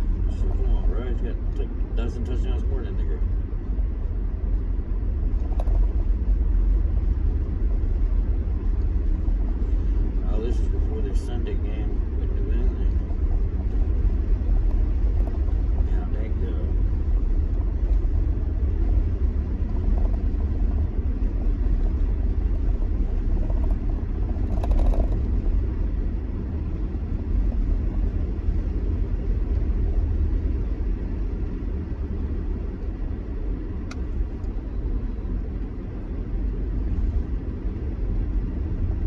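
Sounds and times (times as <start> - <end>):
car engine and road rumble: 0.0 - 39.0
click: 33.9 - 34.6.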